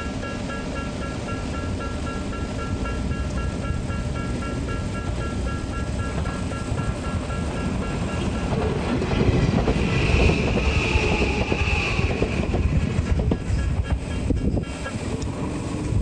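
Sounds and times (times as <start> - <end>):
crossing warning bell: 0.0 - 12.7
train wheels clattering on rails: 0.0 - 16.0
high wheel squeal: 3.6 - 15.2.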